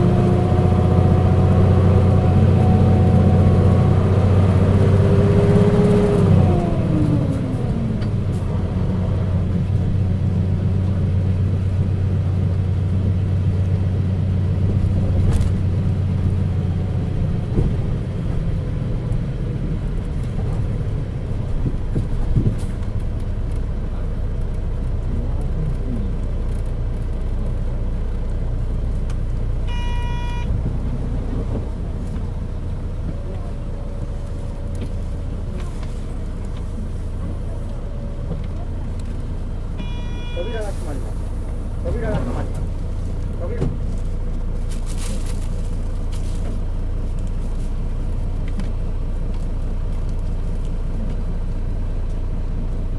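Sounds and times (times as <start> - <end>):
bus engine low rumble: 0.0 - 52.9
short electronic beep: 29.7 - 30.5, 39.8 - 40.7.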